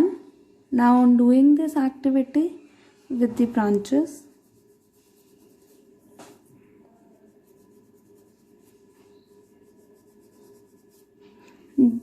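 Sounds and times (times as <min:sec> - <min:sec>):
crayon scratching on paper: 0:03.6 - 0:06.5, 0:07.1 - 0:11.6.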